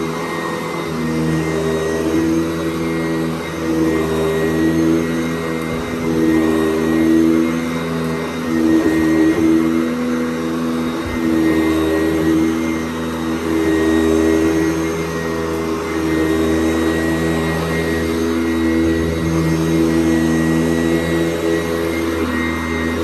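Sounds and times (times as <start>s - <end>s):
vacuum cleaner motor whine: 0.0s - 23.0s.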